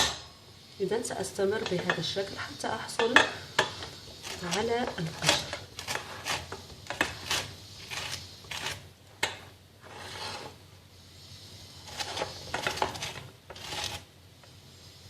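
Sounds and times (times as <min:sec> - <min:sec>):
peel grated on hand grater: 0:04.2 - 0:08.8, 0:11.8 - 0:14.0.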